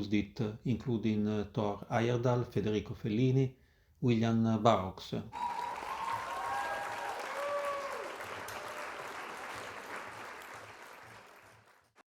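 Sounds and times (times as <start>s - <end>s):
crowd applause: 5.4s - 12.0s.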